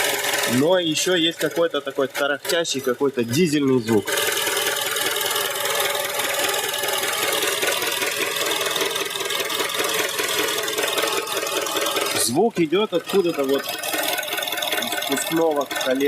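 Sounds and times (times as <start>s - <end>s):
fuel injectors ticking: 0.0s - 16.0s
rattling engine knock: 4.1s - 16.0s
car engine idling: 5.1s - 16.0s.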